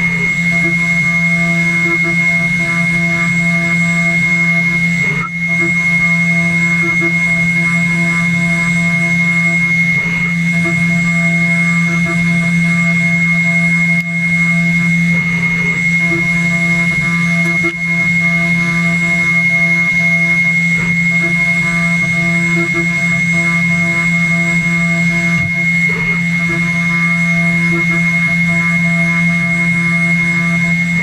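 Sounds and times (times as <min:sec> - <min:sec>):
router spindle whining: 0:00.0 - 0:31.0.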